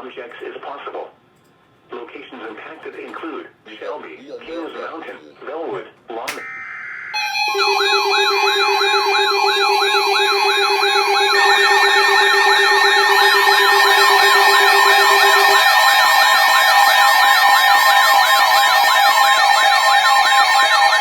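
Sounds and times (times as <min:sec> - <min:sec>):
steady alarm tones: 0:06.4 - 0:21.0
yelping siren sweeps: 0:06.4 - 0:21.0.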